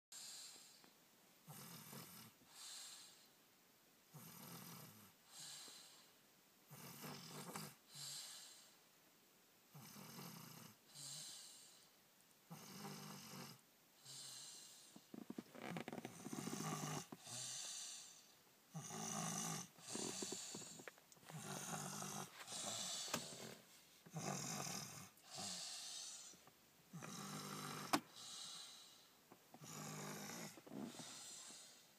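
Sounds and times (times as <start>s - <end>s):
rasping snore: 1.5s - 2.4s, 4.1s - 5.1s, 6.7s - 7.8s, 9.7s - 11.5s, 12.5s - 14.6s, 15.2s - 28.9s, 29.6s - 31.8s.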